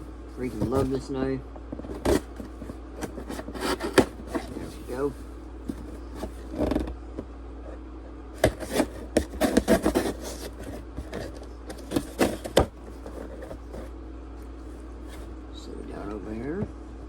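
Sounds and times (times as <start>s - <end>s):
cardboard package being handled: 0.4s - 1.1s, 1.8s - 7.0s, 8.4s - 13.9s.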